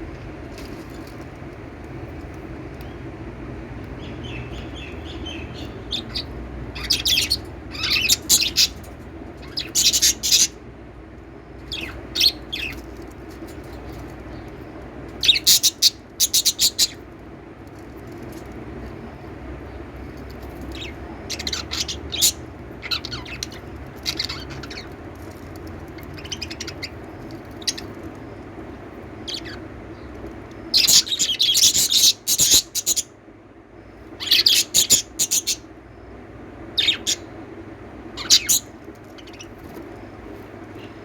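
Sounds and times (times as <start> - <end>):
steady low hum: 0.0 - 41.0
parrots chirping: 3.9 - 10.6, 11.6 - 14.5, 15.2 - 17.1, 20.0 - 28.4, 29.2 - 33.2, 34.1 - 35.7, 36.7 - 37.4, 38.0 - 39.9.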